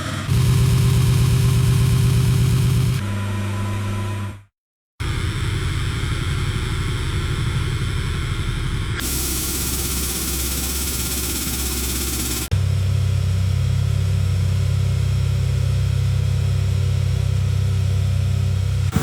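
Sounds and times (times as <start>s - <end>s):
hiss: 9.0s - 12.5s
ship engine idling: 9.0s - 12.5s.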